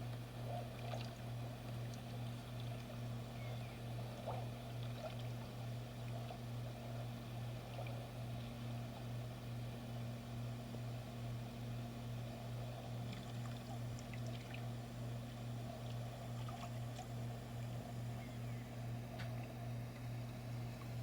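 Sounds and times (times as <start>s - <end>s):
boat motor humming: 0.0s - 21.0s
water lapping: 0.4s - 8.3s, 12.7s - 17.4s.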